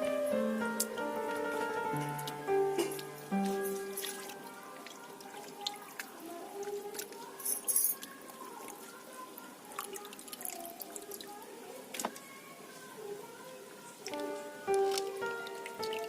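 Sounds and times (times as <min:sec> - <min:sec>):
water splashing and dripping: 0:01.9 - 0:07.4, 0:09.7 - 0:12.1, 0:14.0 - 0:16.0.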